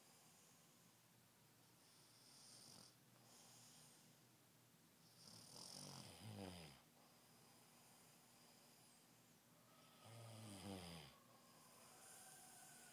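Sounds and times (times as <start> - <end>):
man snoring: 2.2 - 3.0, 5.2 - 6.8, 10.0 - 11.2.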